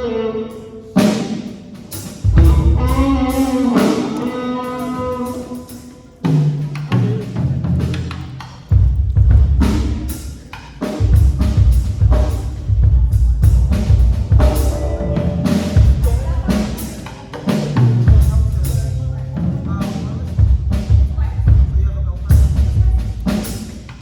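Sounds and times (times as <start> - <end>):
live band music: 0.0 - 24.0
drum hits: 1.1 - 4.3, 6.6 - 24.0
low bass notes: 2.2 - 4.0, 11.0 - 23.5.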